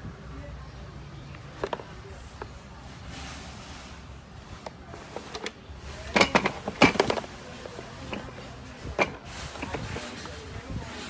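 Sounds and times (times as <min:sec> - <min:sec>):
hard objects clicking and knocking: 0:01.3 - 0:02.6, 0:04.4 - 0:11.0.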